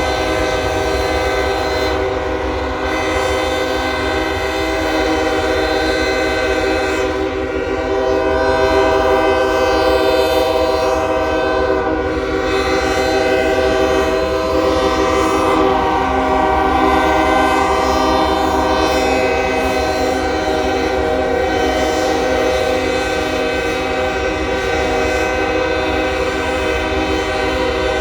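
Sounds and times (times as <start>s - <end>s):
locomotive air horns blowing: 0.0s - 28.0s.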